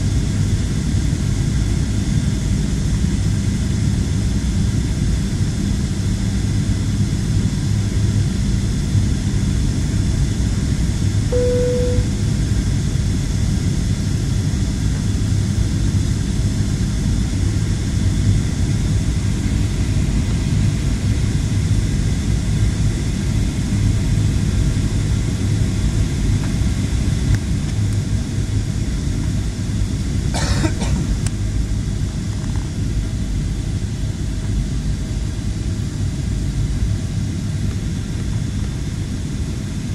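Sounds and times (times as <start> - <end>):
short single tone: 11.3 - 12.3.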